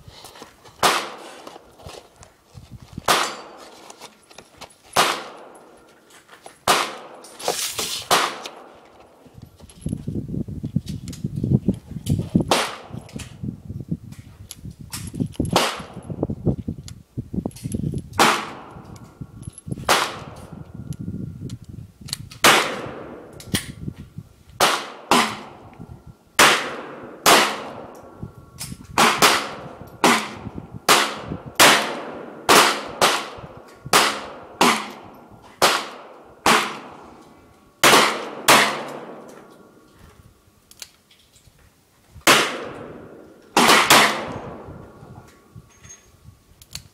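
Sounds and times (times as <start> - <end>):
handgun shots ringing: 3.1 - 3.6, 5.0 - 5.7, 6.6 - 7.4, 37.8 - 39.3, 43.6 - 44.6.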